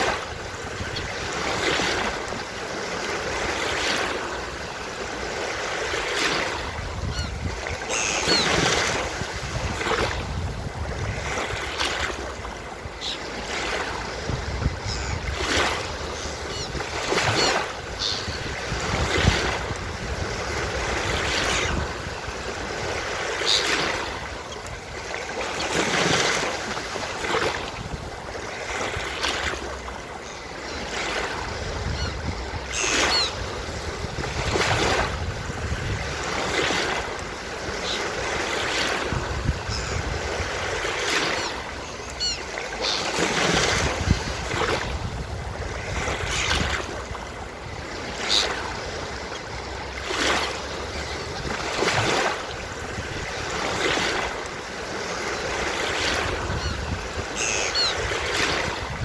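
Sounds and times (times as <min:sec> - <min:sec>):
ocean surf washing onto beach: 0:00.0 - 0:59.0
faint seagull calls: 0:07.0 - 0:08.8, 0:13.0 - 0:13.3, 0:14.8 - 0:15.4, 0:16.1 - 0:18.6, 0:23.3 - 0:23.8, 0:31.8 - 0:33.5, 0:39.6 - 0:40.2, 0:41.1 - 0:43.2, 0:48.2 - 0:48.7, 0:56.5 - 0:58.2.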